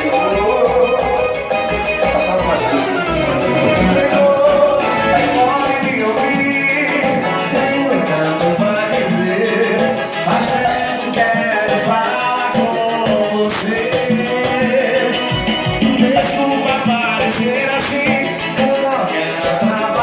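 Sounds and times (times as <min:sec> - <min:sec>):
party song with steady beat: 0:00.0 - 0:20.0.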